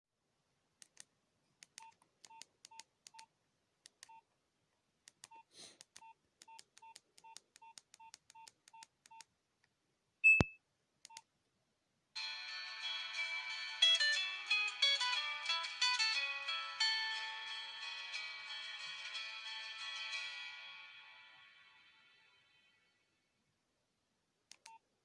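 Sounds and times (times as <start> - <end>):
louder higher beep with thump: 10.2 - 10.6
phone keypad beeps: 10.2 - 11.2.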